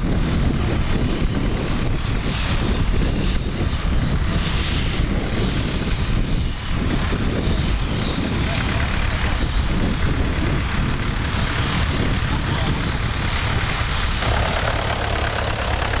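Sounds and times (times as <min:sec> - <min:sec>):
tractor engine running: 0:08.2 - 0:16.0.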